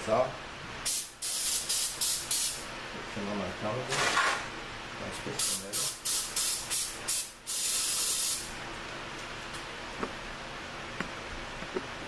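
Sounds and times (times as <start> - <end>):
aerosol spray can hissing: 7.5 - 8.5.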